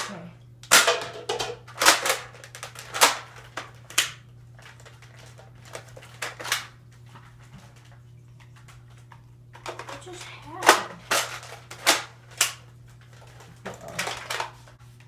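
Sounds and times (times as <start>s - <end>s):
dart blaster plastic clacks and snaps: 0.6s - 4.2s, 5.7s - 6.8s, 10.6s - 12.6s.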